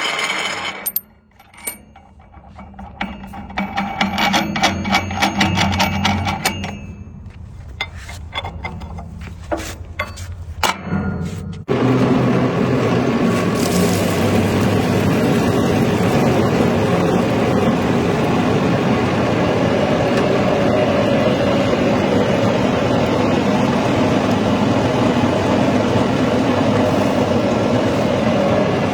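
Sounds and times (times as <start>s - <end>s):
pellet mill humming: 11.7s - 28.9s.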